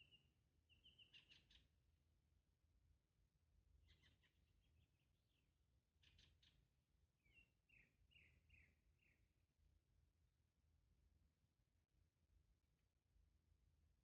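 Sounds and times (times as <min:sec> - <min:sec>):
faint birds chirping: 0:00.0 - 0:02.3, 0:03.5 - 0:10.0.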